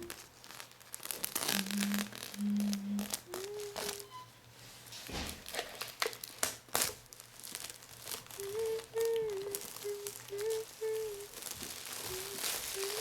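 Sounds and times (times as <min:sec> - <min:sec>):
person humming: 0:00.0 - 0:00.2, 0:01.4 - 0:04.3, 0:08.2 - 0:13.0
paper and plastic crinkling: 0:00.0 - 0:13.0.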